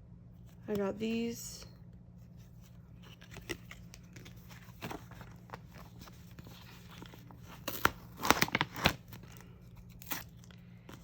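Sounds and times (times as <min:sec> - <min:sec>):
packaging crinkling: 0:02.8 - 0:11.0.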